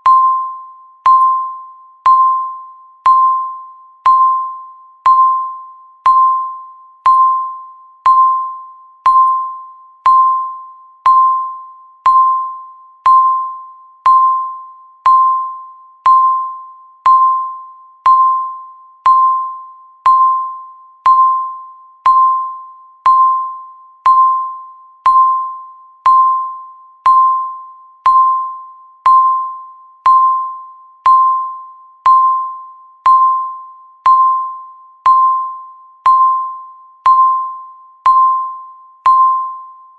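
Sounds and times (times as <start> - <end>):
timer beeping: 0.0 - 39.9.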